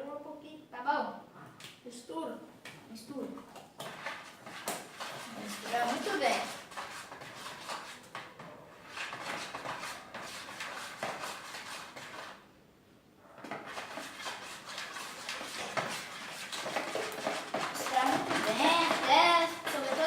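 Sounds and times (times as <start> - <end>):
utensils clinking and scraping: 13.4 - 20.0.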